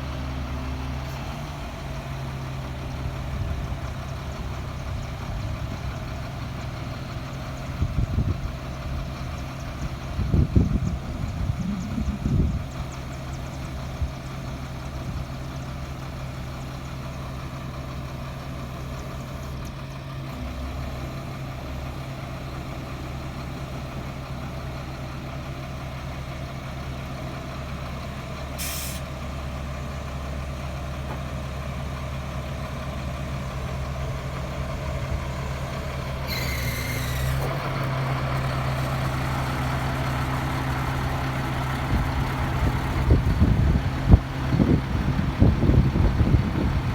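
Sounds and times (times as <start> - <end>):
diesel truck engine running: 0.0 - 46.9
air release hiss: 28.6 - 29.1.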